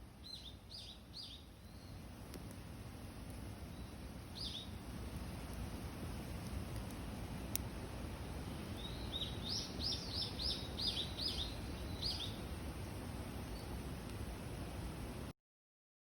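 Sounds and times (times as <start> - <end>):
bird singing high arching notes: 0.2 - 2.0, 3.6 - 4.8, 8.4 - 12.5.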